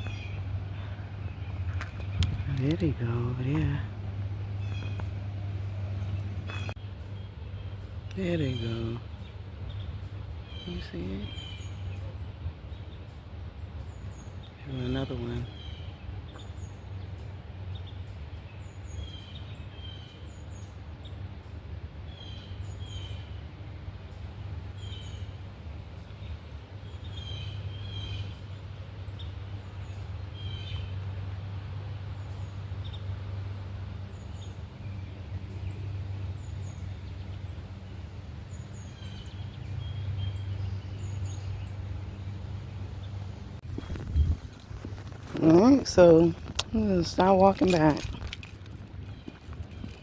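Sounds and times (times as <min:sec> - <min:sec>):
steady low rumble: 0:00.0 - 0:11.0, 0:25.4 - 0:50.0
small birds chirping: 0:00.0 - 0:50.0.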